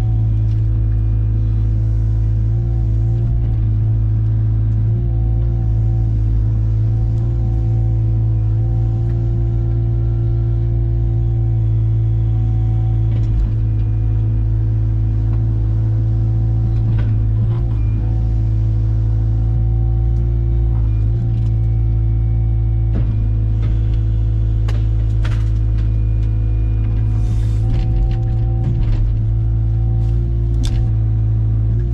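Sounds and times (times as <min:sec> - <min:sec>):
heavy machine diesel engine rumbling: 0:00.0 - 0:31.9.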